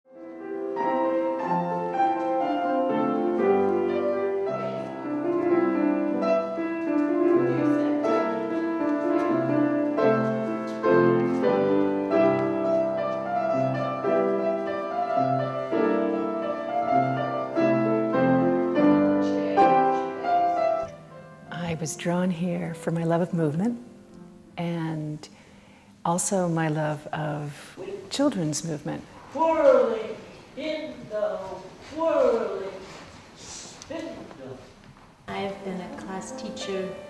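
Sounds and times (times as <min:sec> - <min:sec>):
solo piano melody: 0:00.1 - 0:24.6, 0:35.3 - 0:37.0.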